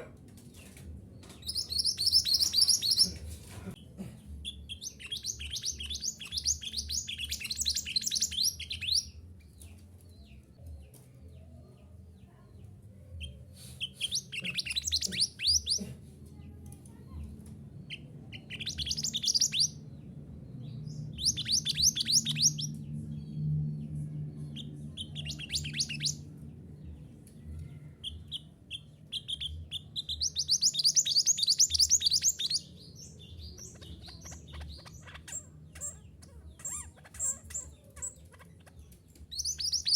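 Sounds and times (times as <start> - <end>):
songbird chattering trills: 4.4 - 9.0, 13.2 - 15.8, 17.9 - 19.7, 21.2 - 22.7, 24.5 - 26.2.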